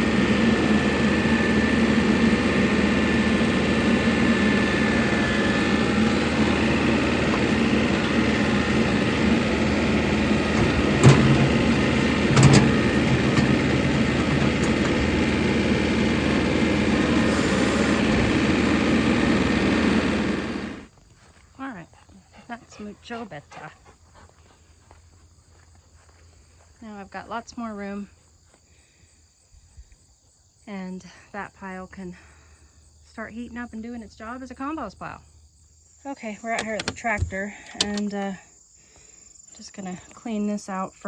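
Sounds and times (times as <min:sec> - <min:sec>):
clunks: 0:00.0 - 0:20.9, 0:36.5 - 0:38.1
tractor engine running: 0:00.0 - 0:20.9.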